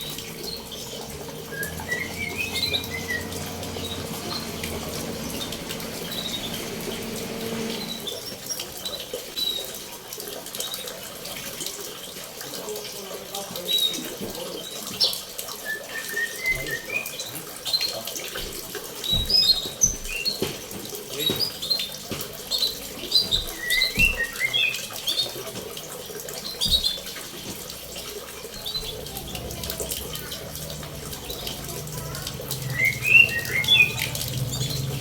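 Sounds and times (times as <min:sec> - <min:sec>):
songbirds chirping: 0:00.0 - 0:08.7, 0:28.4 - 0:35.0
running water: 0:00.0 - 0:35.0.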